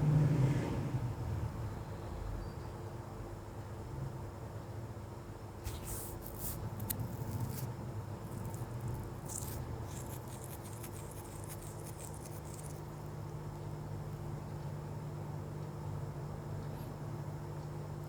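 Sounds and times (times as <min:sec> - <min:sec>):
steady low hum: 0:05.4 - 0:18.0.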